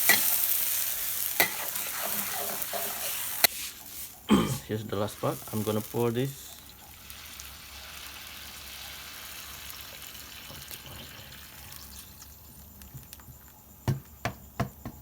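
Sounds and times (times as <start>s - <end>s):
liquid pouring into a bowl: 5.1s - 12.6s.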